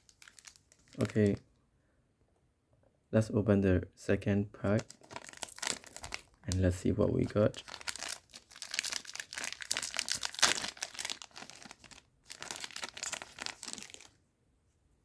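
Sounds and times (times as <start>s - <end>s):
wrapper tearing and crinkling: 0.0s - 1.4s, 4.7s - 14.2s.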